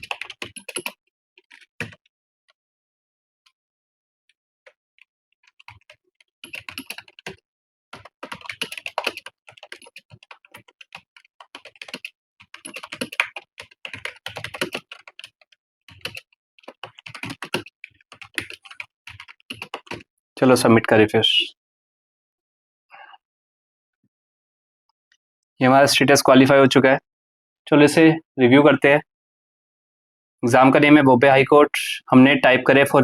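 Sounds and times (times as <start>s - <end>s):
fast typing on keyboard: 0.0s - 2.0s, 5.4s - 20.1s.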